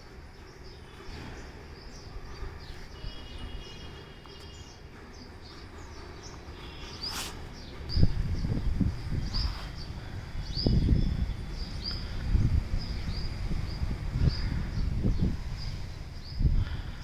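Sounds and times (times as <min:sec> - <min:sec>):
birds chirping: 0:00.0 - 0:17.0
steady low rumble: 0:07.7 - 0:17.0.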